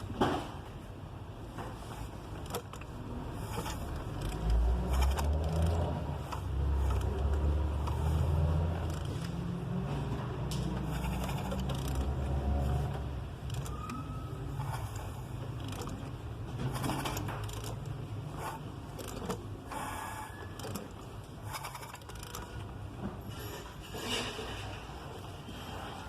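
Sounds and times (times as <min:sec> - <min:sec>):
metal tools clinking and scraping: 0:23.2 - 0:26.0.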